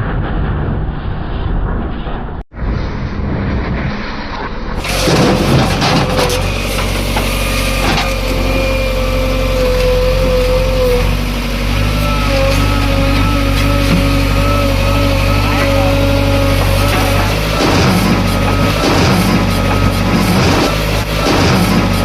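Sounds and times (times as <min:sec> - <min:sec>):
burst of clatter: 0:00.0 - 0:08.4, 0:16.6 - 0:22.0
wavering whine: 0:00.0 - 0:22.0
diesel engine running: 0:02.6 - 0:22.0.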